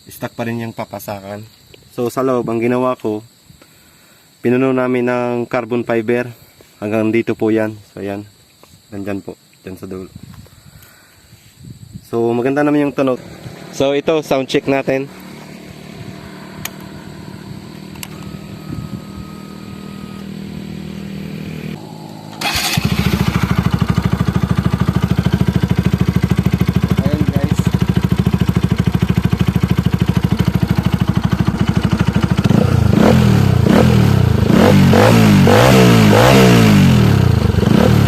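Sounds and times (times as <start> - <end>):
motorcycle engine idling and revving: 13.1 - 38.0.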